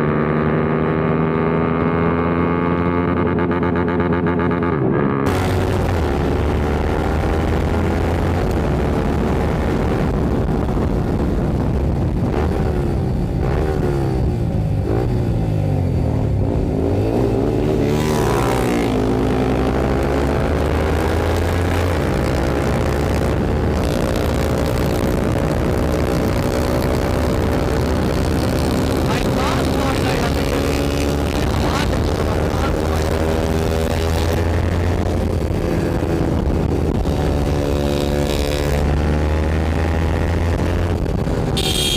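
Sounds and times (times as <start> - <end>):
motorcycle engines revving: 0.0 - 41.9.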